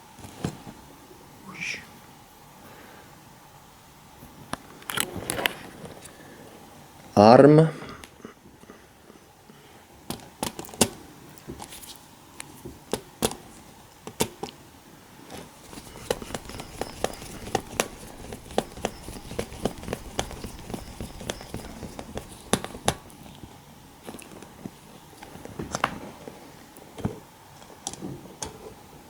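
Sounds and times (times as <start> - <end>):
sharp irregular clicks and taps: 15.6 - 23.1.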